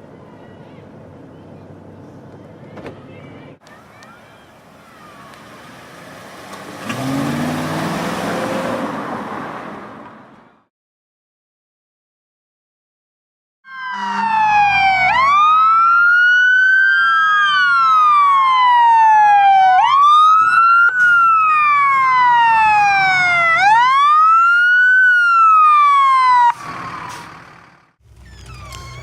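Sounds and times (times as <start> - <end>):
siren wailing: 13.6 - 26.6.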